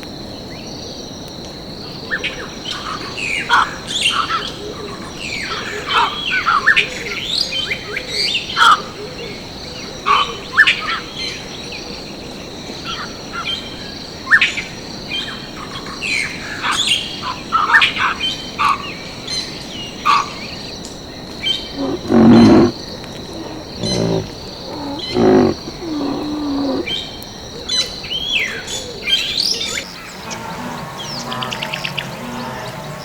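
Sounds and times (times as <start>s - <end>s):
high insect drone: 0.0s - 33.0s
birds chirping and calling: 21.6s - 33.0s
animal giving low calls: 21.7s - 27.0s.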